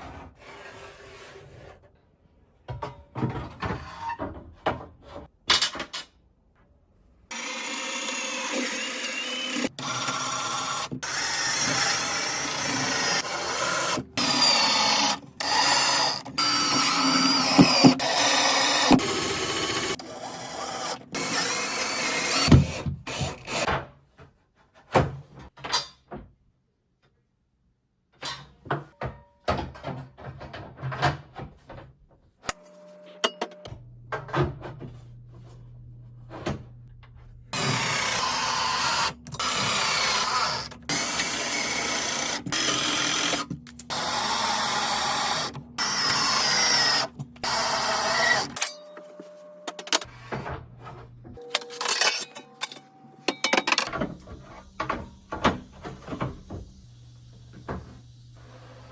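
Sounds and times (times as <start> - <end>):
knocks and clicks of handling parts: 2.6 - 6.7
power drill running: 7.3 - 23.6, 37.6 - 48.7.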